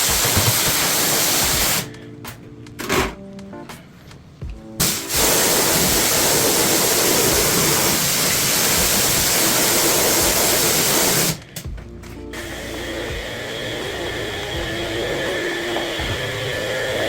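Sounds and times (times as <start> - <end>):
rushing water spray: 0.0 - 1.9, 4.8 - 11.4.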